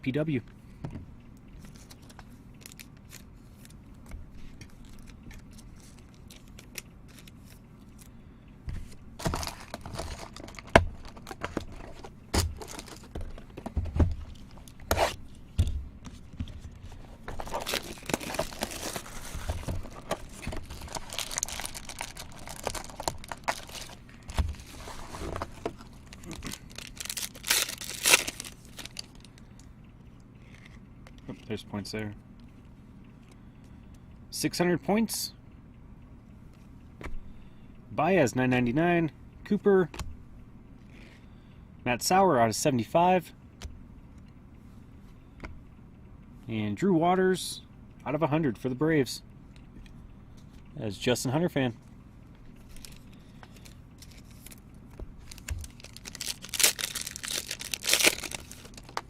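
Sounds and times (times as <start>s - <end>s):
wrapping tearing and crinkling: 1.6s - 3.8s, 4.7s - 8.1s, 9.2s - 13.2s, 17.2s - 29.4s, 52.6s - 54.6s, 55.2s - 59.0s.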